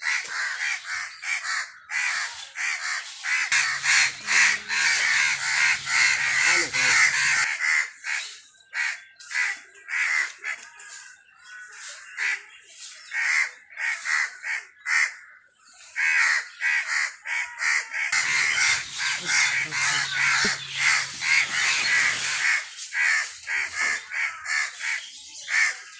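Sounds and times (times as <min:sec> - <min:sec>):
crows cawing: 0:00.0 - 0:08.2, 0:13.2 - 0:15.3, 0:16.0 - 0:25.7.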